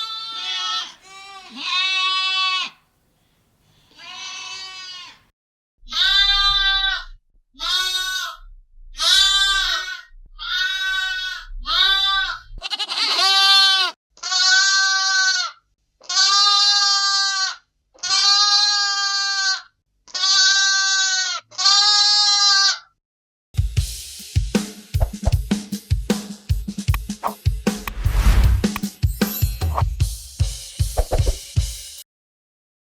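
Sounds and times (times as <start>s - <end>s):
lamb bleating: 0.0s - 2.8s, 3.9s - 22.9s
drum-kit beat: 23.6s - 32.0s.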